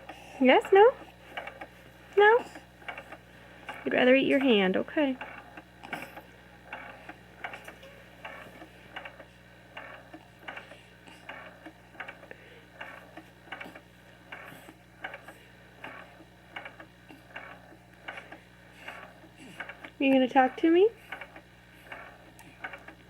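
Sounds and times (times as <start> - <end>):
evenly spaced clicking: 2.4 - 23.0.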